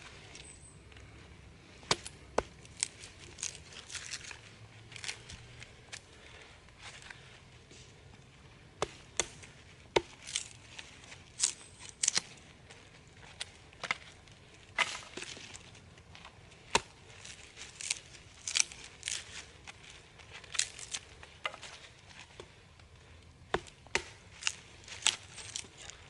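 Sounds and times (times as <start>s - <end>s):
wood chopping: 1.8s - 4.0s, 8.8s - 10.6s, 16.6s - 19.2s, 23.4s - 25.7s.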